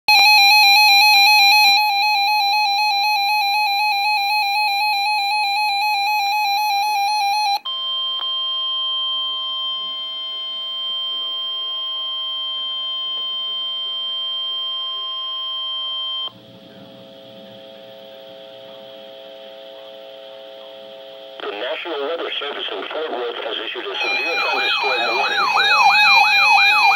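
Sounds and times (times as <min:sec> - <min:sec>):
steady alert tone: 0:24.0 - 0:26.9
warbling alert tone: 0:24.0 - 0:26.9.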